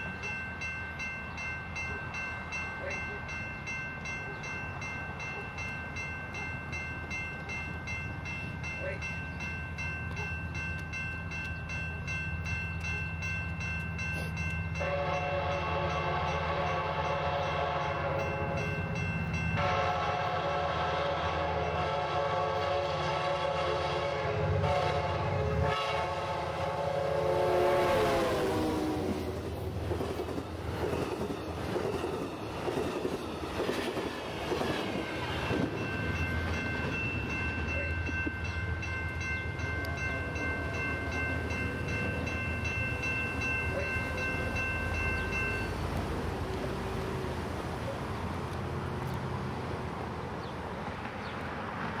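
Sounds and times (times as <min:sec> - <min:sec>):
train rumbling and clattering by: 0:00.0 - 0:52.0
train horn: 0:14.8 - 0:18.6, 0:19.5 - 0:29.5
steady high ringing tone: 0:34.6 - 0:45.8.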